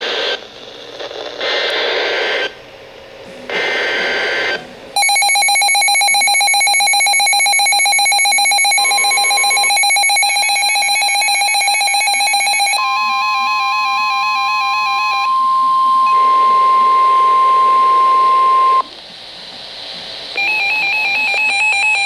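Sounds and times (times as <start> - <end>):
harsh digital data bursts: 3.7 - 12.8
two-tone attention signal: 5.0 - 18.8.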